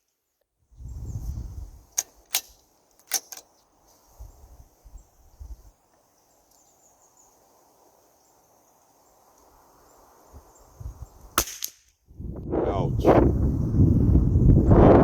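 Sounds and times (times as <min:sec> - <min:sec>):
rifle bolt metallic clicks: 0:02.0 - 0:03.6.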